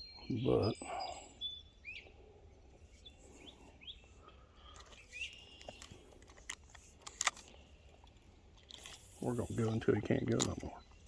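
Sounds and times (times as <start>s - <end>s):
faint bird chirps: 0.0s - 6.1s.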